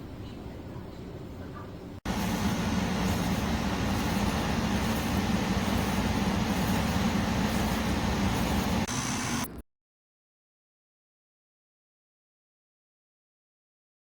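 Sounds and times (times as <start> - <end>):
air conditioner fan humming: 1.8 - 9.5.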